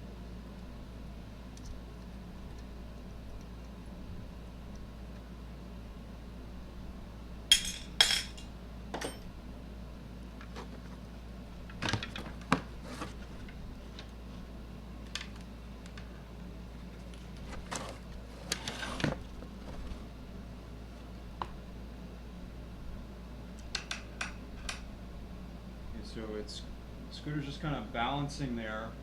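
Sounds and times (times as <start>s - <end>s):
metal tools clinking and clanking: 7.5s - 9.3s.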